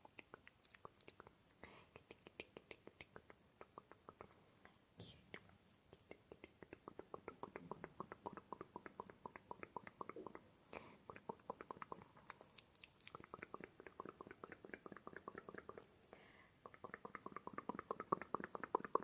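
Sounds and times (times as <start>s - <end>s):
tongue and lip clicks: 0.0s - 19.0s.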